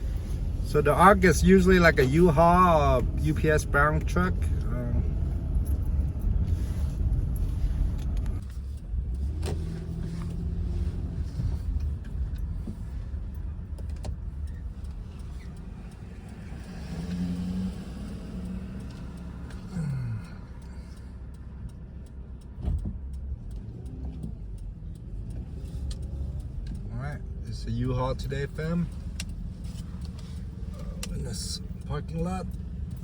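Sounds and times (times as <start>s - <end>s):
car engine and road rumble: 0.0s - 33.0s
sharp clicks: 11.7s - 33.0s.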